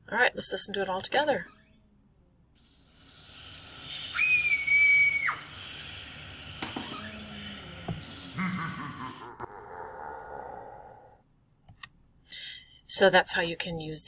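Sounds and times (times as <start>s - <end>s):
whistle-like sliding tone: 2.6s - 8.8s
breathy hiss: 2.6s - 11.2s.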